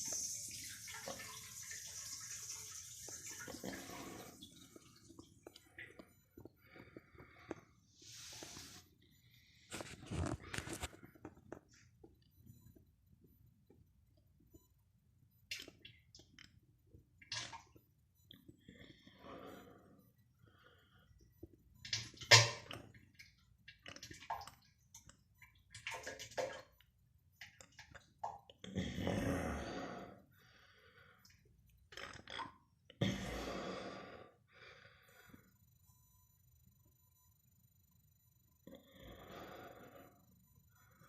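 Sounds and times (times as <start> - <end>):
wet sputters splashing into toilet: 21.8 - 23.0, 25.6 - 26.7.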